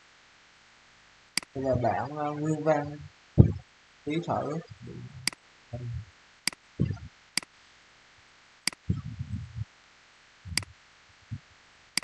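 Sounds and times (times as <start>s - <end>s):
low muffled rumbles: 1.6s - 6.1s, 6.8s - 7.2s, 8.8s - 9.7s, 10.4s - 11.6s
sharp plastic clicks: 6.5s - 7.5s, 8.7s - 8.9s.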